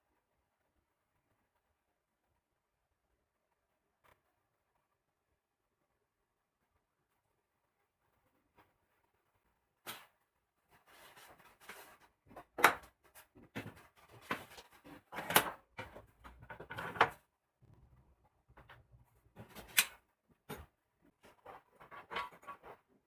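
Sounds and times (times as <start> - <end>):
objects knocking and clunking: 11.0 - 23.0.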